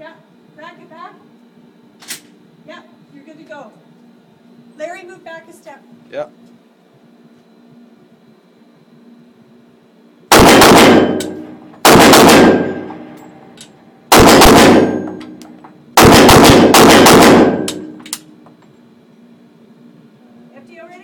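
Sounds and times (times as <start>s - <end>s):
pistol shots with echo: 10.3s - 13.3s, 14.1s - 15.4s, 16.0s - 18.0s.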